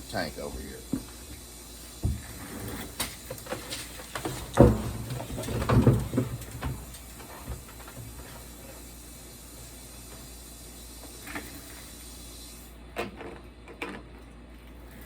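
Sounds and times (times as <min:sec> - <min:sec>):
knocks bumps and scraping: 0:02.0 - 0:08.3
heavy thump: 0:04.2 - 0:06.9.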